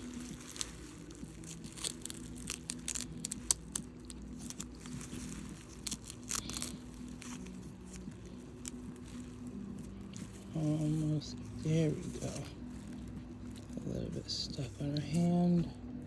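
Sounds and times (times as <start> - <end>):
packaging wrap crinkling and tearing: 0.0 - 15.3.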